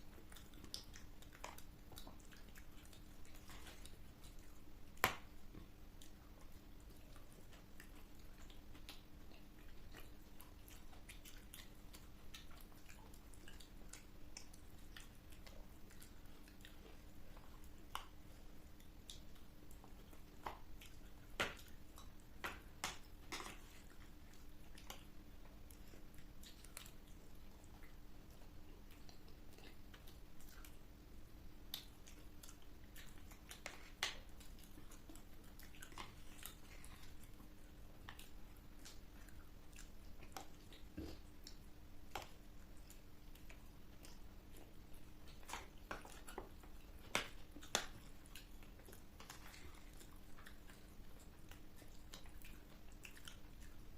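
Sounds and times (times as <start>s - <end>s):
person chewing crisp food: 0.0s - 31.0s, 31.7s - 53.9s
faint low hum: 0.0s - 53.9s
wet mouth sounds: 31.6s - 53.9s.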